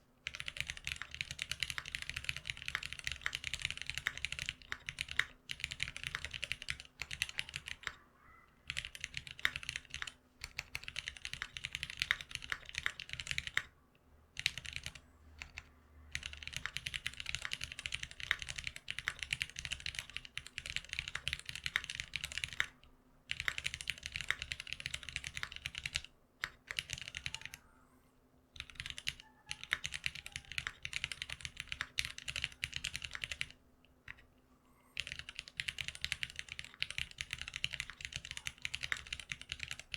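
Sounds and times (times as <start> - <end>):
mechanical keyboard typing: 0.2 - 8.0, 8.6 - 13.7, 14.3 - 27.6, 28.6 - 34.3, 35.0 - 39.9.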